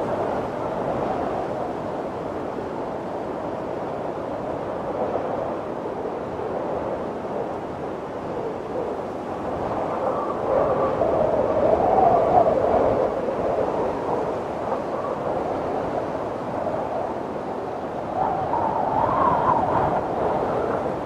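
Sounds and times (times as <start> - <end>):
snowstorm wind blowing: 0.0 - 21.0.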